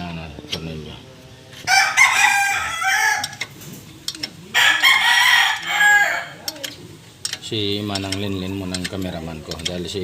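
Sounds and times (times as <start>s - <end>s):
rooster crowing: 1.7s - 3.5s, 4.5s - 6.4s.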